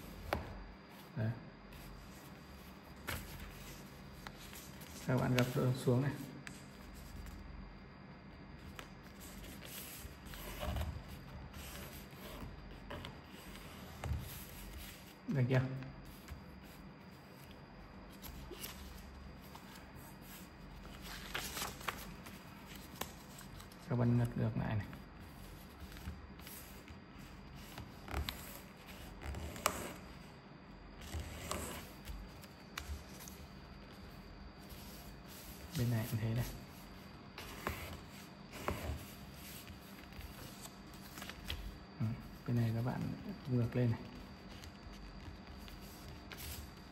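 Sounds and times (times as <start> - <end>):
paper rustling and crinkling: 18.1 - 23.9.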